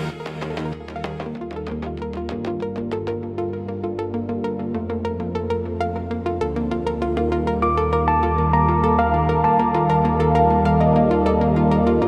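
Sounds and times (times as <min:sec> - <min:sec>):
held synth chords: 0:00.0 - 0:01.6
steady bass line: 0:00.0 - 0:12.0.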